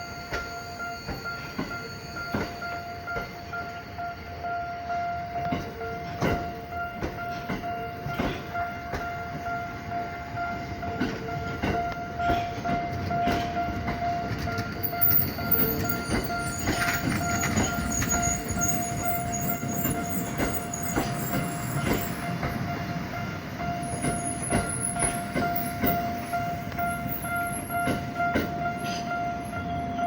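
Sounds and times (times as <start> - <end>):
crossing warning ringing tone: 0.0 - 30.0
train wheels knocking over rail joints: 10.9 - 22.9, 23.5 - 29.0
high-pitched wheel squeal: 14.8 - 22.2.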